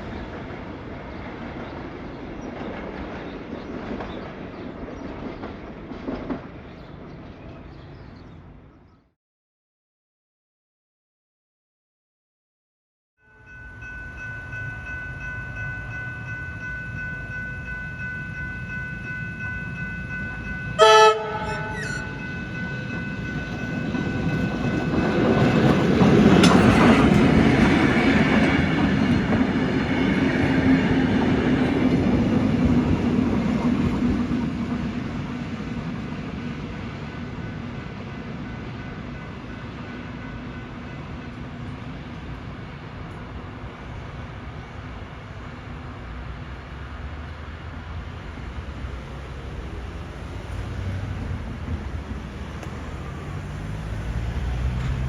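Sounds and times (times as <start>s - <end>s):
electric train whine: 13.2s - 55.0s
wheel and rail noise: 13.4s - 55.0s
train horn blast: 20.7s - 23.1s.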